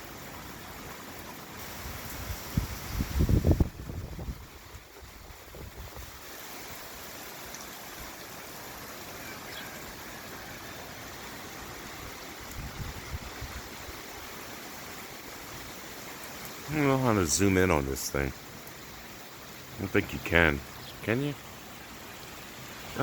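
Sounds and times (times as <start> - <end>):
steady rain hissing: 0.0 - 23.0
wind buffeting microphone: 1.9 - 6.2, 12.4 - 14.0.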